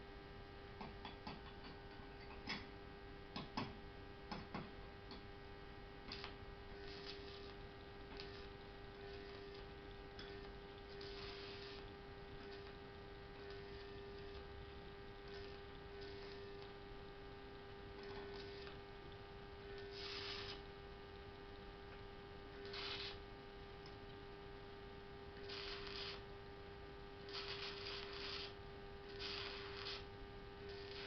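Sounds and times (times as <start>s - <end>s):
welding transformer humming: 0.0s - 31.0s
short hissing bursts: 11.0s - 11.8s, 19.8s - 20.6s, 22.6s - 23.2s, 25.4s - 26.2s, 27.3s - 30.1s, 30.7s - 31.0s.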